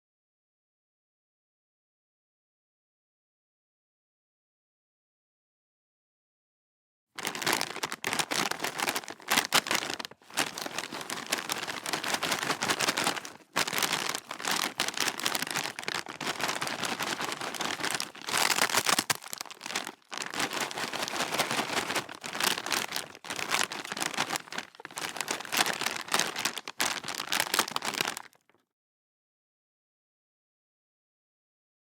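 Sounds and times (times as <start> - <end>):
chip bag crinkling: 7.2 - 28.5.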